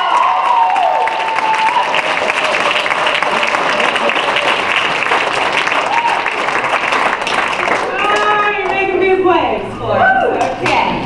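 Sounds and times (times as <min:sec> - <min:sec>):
person whooping: 0:00.0 - 0:04.0, 0:05.8 - 0:06.4
audience applauding: 0:00.0 - 0:08.8.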